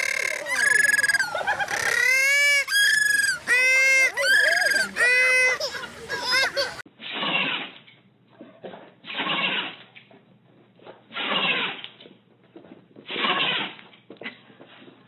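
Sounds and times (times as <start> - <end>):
animal calling: 0.0 - 6.8.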